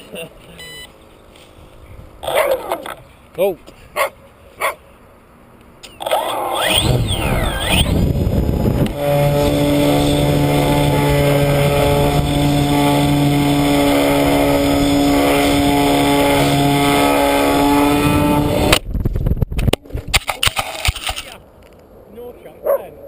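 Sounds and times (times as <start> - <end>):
model aeroplane motor droning: 6.4 - 18.8.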